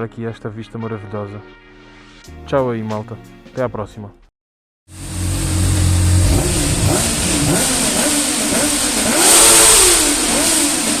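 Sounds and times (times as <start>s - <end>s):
motorcycle engine revving: 4.9s - 11.0s.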